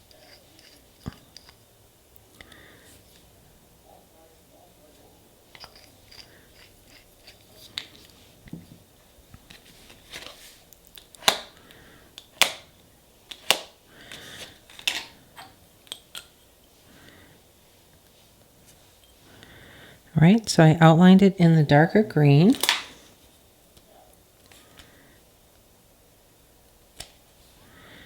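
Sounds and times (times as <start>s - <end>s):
small tools set down: 0.0s - 1.6s, 5.5s - 8.8s, 13.4s - 16.5s
sharp clicks of tools: 10.8s - 11.6s.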